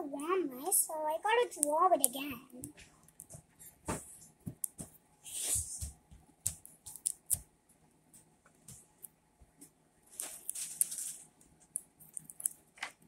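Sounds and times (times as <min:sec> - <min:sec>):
paper rustling: 0:10.2 - 0:11.3.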